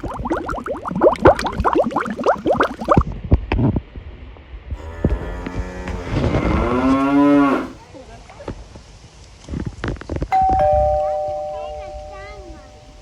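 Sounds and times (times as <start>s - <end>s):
cow mooing: 4.8s - 7.8s.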